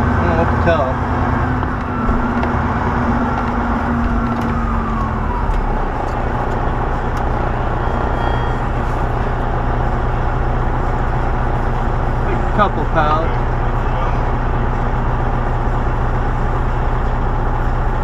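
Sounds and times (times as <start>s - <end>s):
diesel truck engine running: 0.0s - 18.0s
humming tone sliding lower: 1.0s - 10.0s.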